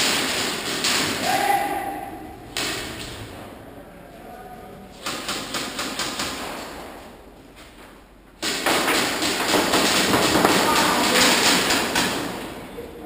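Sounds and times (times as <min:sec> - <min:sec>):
airsoft guns firing: 0:00.0 - 0:01.3, 0:05.0 - 0:06.7, 0:08.4 - 0:12.5.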